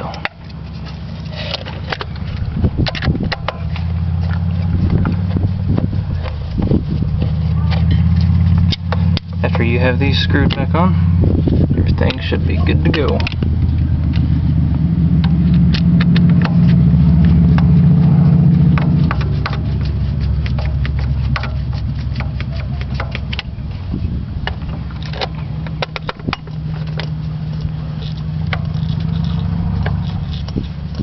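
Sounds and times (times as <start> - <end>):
hand tools tightening screws: 0.0 - 5.4, 15.3 - 23.6, 24.5 - 31.0
low engine hum: 0.0 - 31.0.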